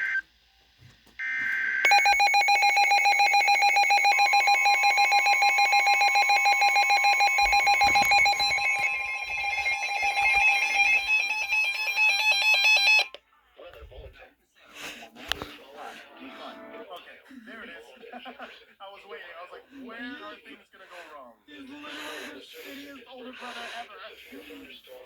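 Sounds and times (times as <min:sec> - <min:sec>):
pulsing electronic alarm tone: 0:01.2 - 0:13.1
steady high beep: 0:01.8 - 0:13.1.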